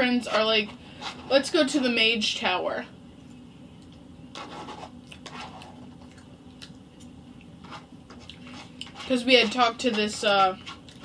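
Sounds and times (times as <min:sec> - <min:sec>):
person chewing food: 0:04.9 - 0:09.1, 0:10.6 - 0:11.0.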